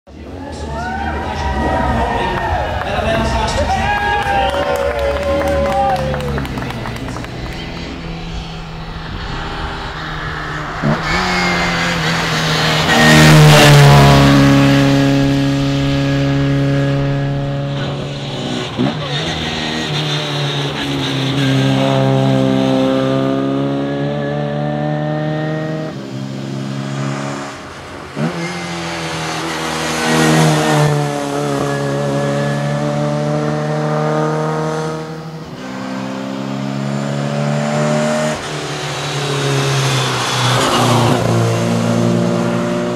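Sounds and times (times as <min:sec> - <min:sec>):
car engine revving hard: 0:01.6 - 0:42.9.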